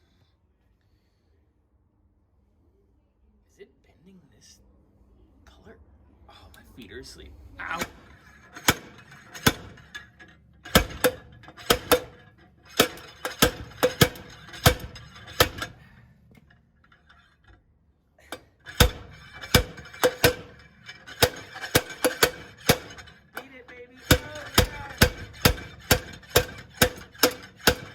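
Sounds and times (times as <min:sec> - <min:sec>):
hammer striking metal: 0:07.6 - 0:16.0, 0:18.7 - 0:27.9.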